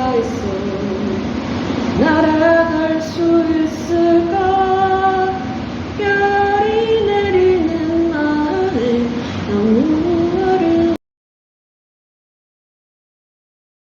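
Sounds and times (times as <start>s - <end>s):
woman humming a melody: 6.0s - 11.0s.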